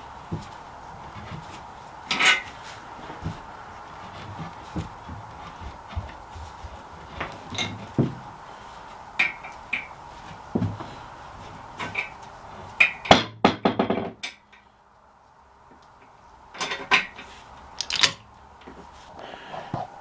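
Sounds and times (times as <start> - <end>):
tools and metal parts clinking: 2.1 - 2.6, 7.1 - 8.0, 16.5 - 18.3.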